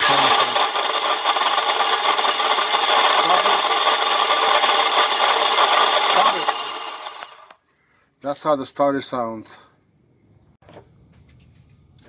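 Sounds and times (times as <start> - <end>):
car starter motor cranking: 0.0 - 7.5.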